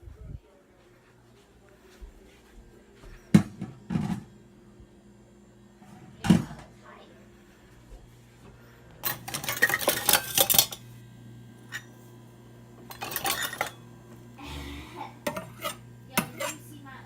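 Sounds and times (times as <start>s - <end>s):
dishes and cutlery clattering: 9.0s - 10.9s, 11.6s - 12.0s, 12.9s - 13.8s, 15.2s - 16.7s.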